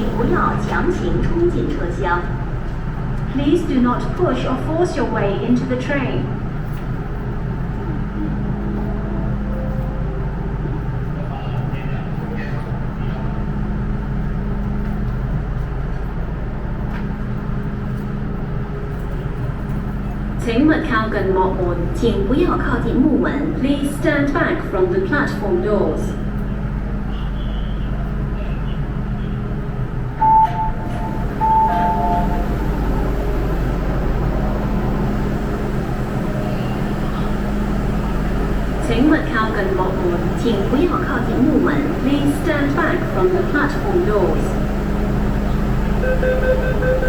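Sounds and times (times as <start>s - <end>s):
metro train humming: 0.0s - 47.0s.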